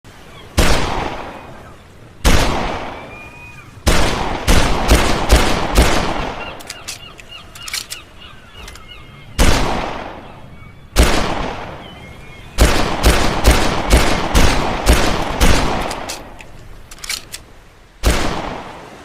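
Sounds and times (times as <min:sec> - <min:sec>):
pistol shots with echo: 0:12.6 - 0:16.2.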